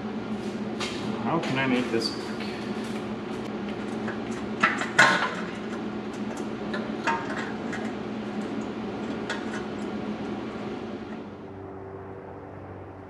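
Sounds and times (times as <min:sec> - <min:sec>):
steady low hum: 0:00.0 - 0:13.0
metal exhaust parts clanking: 0:03.7 - 0:09.9.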